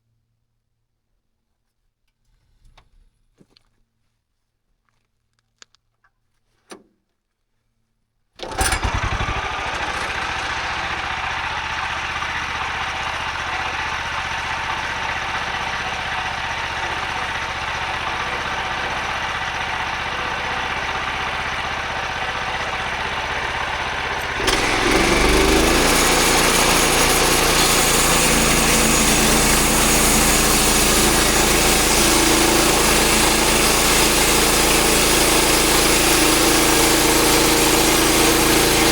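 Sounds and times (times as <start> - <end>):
small gasoline engine running: 8.4 - 38.9.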